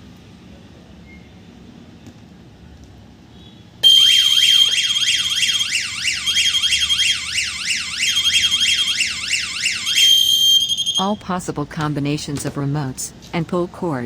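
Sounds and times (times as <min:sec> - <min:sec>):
warbling electronic siren: 0:03.8 - 0:11.1
steady high beep: 0:08.0 - 0:11.2.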